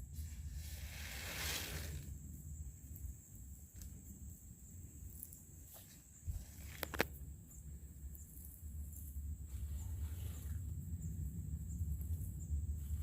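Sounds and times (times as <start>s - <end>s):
wind rumble on microphone: 6.2s - 13.0s.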